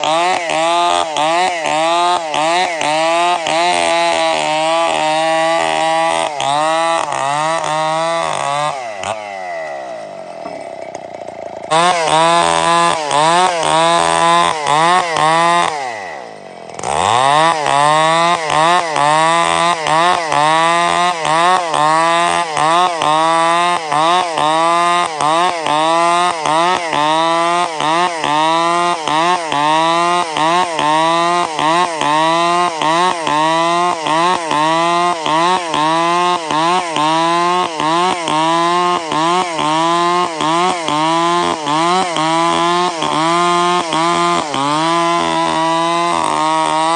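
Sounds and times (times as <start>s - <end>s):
chainsaw running hard: 0.0s - 46.9s.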